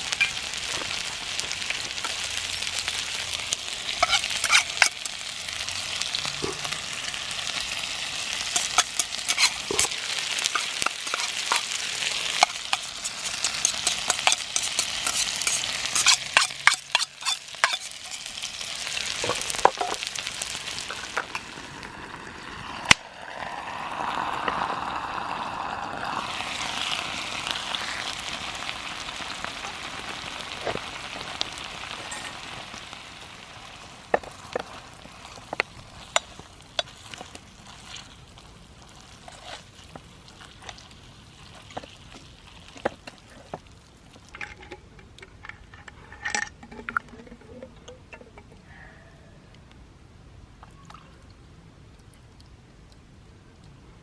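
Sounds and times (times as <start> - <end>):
food sizzling in a pan: 0.0 - 44.2
metal utensil clinking on pan: 4.0 - 5.2, 8.5 - 18.3.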